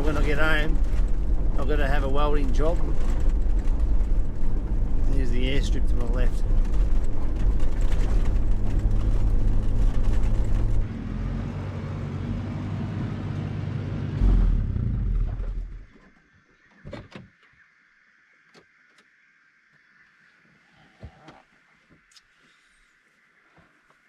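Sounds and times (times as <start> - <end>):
car engine running: 0.0 - 11.3, 11.9 - 15.9.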